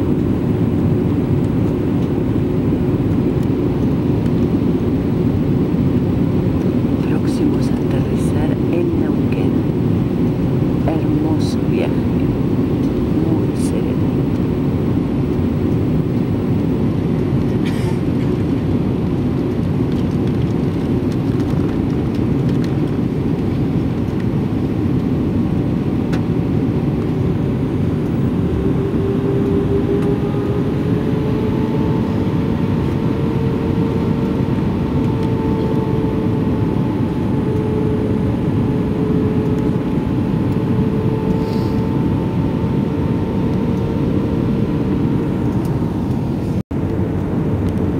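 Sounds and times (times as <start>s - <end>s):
steady wavering hum: 0.0s - 17.1s, 27.2s - 47.9s
jet engines and airflow rushing: 0.0s - 47.9s.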